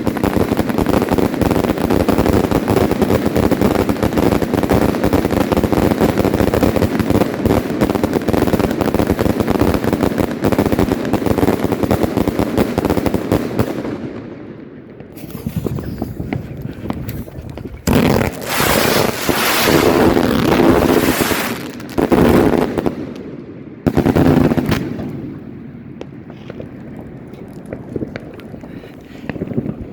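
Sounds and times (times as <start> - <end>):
fireworks banging in barrage: 0.0 - 14.1, 14.9 - 29.9
hissing fireworks bursts: 0.0 - 29.9.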